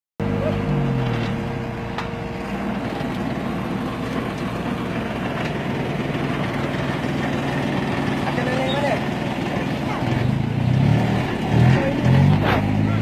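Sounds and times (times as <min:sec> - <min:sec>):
low hum: 0:00.2 - 0:08.4
machine engine running: 0:00.2 - 0:13.0.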